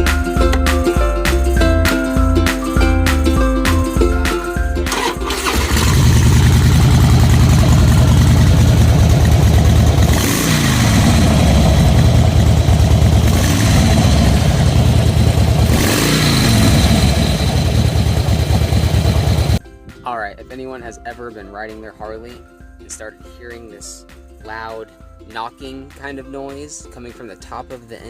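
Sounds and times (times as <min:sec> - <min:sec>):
motorcycle engine knocking: 0:05.0 - 0:19.6.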